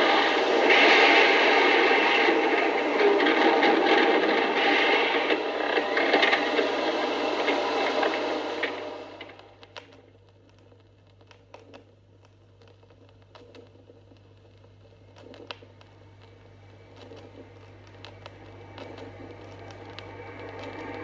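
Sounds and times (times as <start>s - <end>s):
low hum: 0.0s - 10.6s
faint noise: 0.0s - 21.0s
vinyl surface clicks and crackle: 0.0s - 21.0s.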